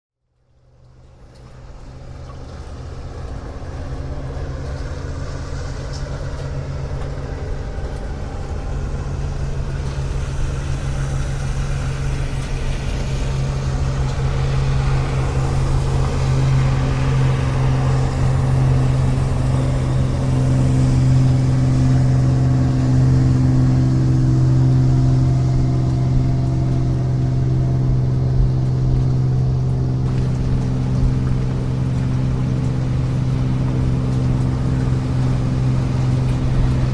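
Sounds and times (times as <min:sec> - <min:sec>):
motorboat engine running: 0:00.2 - 0:36.9.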